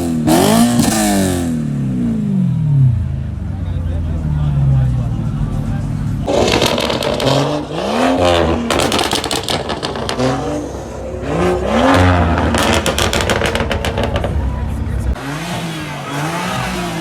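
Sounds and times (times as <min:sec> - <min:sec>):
car engine revving: 0:00.0 - 0:17.0
exhaust popping and crackling: 0:04.8 - 0:15.2.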